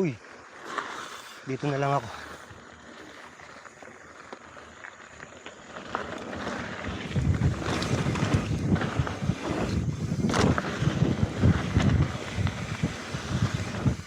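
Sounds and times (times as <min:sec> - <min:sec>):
wind buffeting microphone: 0:06.7 - 0:14.0.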